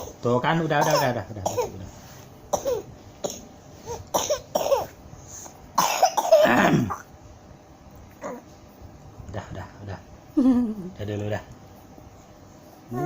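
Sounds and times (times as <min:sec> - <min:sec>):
small child coughing: 0:00.8 - 0:01.8, 0:02.5 - 0:05.0, 0:05.8 - 0:07.1.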